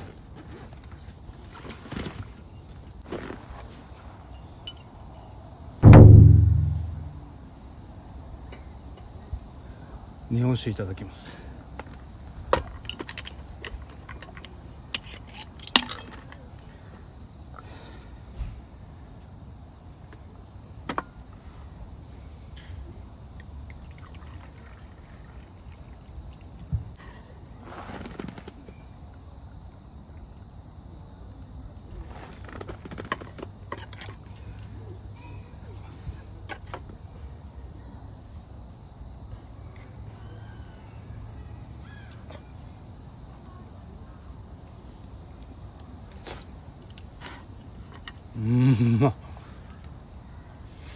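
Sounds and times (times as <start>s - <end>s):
crickets chirping: 0.0s - 50.9s
small sharp knocks: 5.8s - 7.2s.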